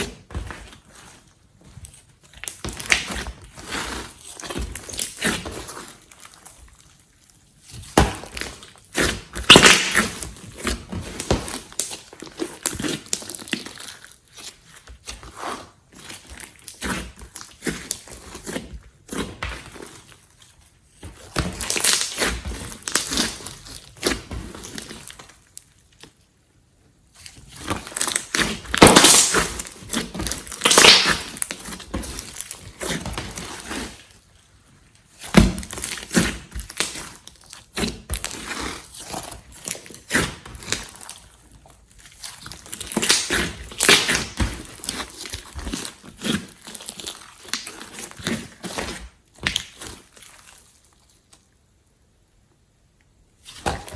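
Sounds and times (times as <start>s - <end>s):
slime squished by hand: 7.8s - 14.2s, 27.8s - 34.0s.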